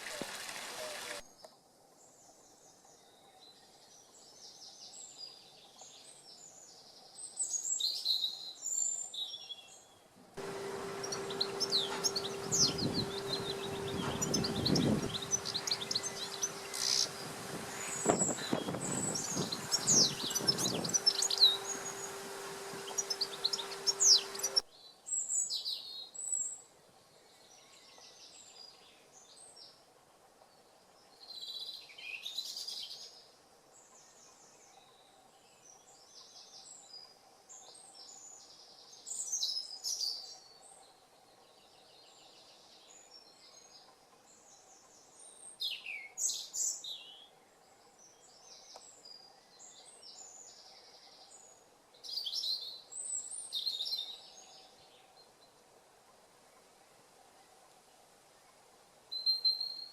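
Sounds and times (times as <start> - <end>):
songbirds chirping: 0.1 - 59.9
faint hum: 10.2 - 24.6
loud steady rushing noise: 10.4 - 24.6.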